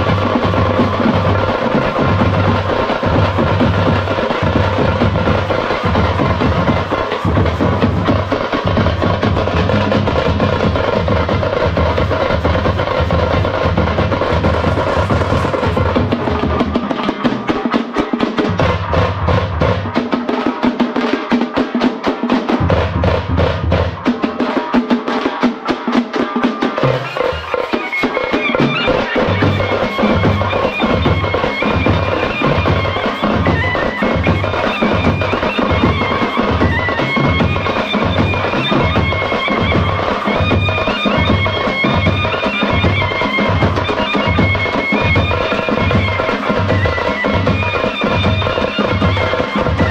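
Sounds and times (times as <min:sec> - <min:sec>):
high wind instrument melody: 0:00.0 - 0:17.7, 0:26.7 - 0:49.9
rapid drumming: 0:00.0 - 0:49.9.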